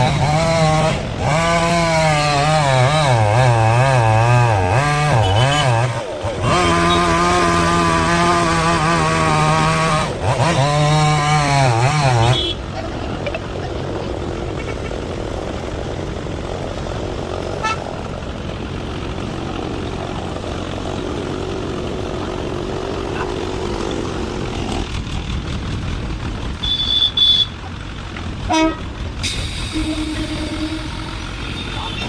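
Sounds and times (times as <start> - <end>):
engine and traffic rumble: 0.0 - 32.0
vehicle horn toots: 5.1 - 7.3, 12.2 - 12.6, 17.6 - 17.9, 26.6 - 27.6, 28.5 - 29.0, 29.6 - 32.0.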